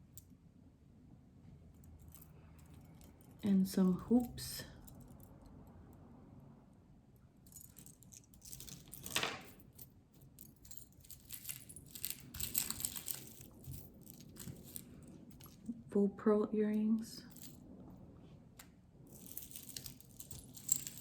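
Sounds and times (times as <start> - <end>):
metal jewelry clinking: 1.7 - 5.5, 7.4 - 15.7, 17.2 - 17.8, 19.1 - 21.0.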